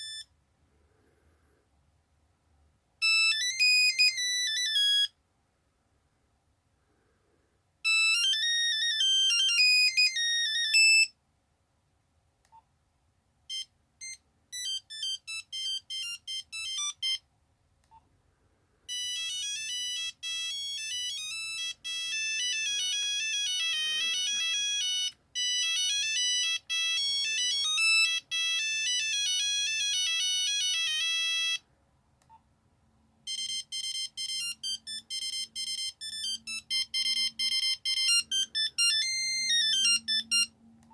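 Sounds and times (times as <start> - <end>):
phone beeping ringtone tunes: 0.0 - 0.3, 3.0 - 5.1, 7.9 - 11.1, 13.5 - 17.2, 18.9 - 31.6, 33.3 - 40.5.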